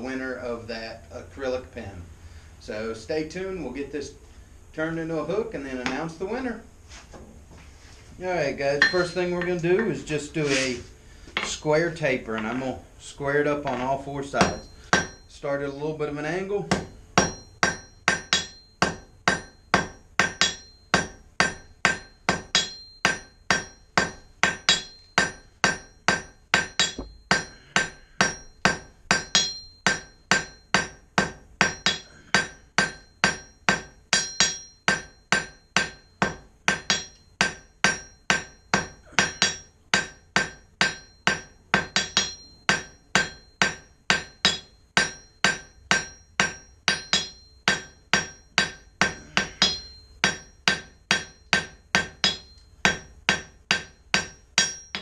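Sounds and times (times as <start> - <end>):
hammer ringing on steel and anvil: 8.8 - 10.0, 14.4 - 15.4, 16.7 - 55.0.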